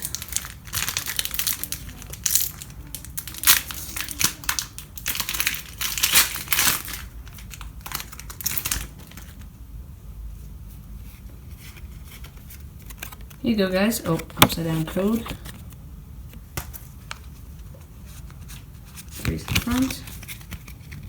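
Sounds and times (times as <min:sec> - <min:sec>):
foil wrapper crinkling and tearing: 0:00.0 - 0:09.4.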